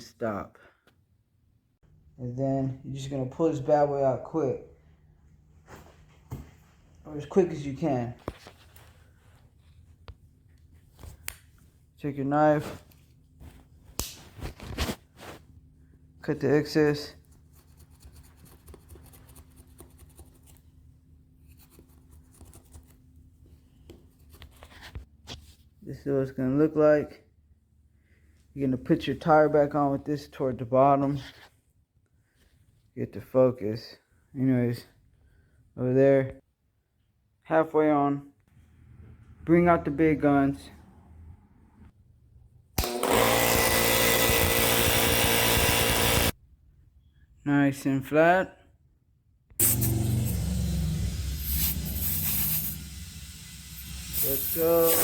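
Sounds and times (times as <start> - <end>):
impact wrench running: 42.8 - 46.3, 49.6 - 55.0.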